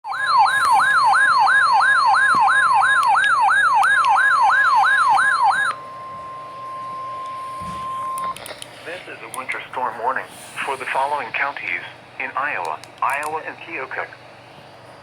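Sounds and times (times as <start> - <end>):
steady alarm tone: 0.0 - 8.4
up-and-down siren sweep: 0.0 - 8.4.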